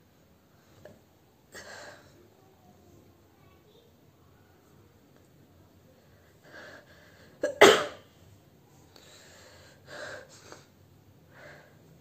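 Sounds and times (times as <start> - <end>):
quiet breathing: 0.2 - 7.4, 8.1 - 12.0
intake of breath: 8.9 - 12.0.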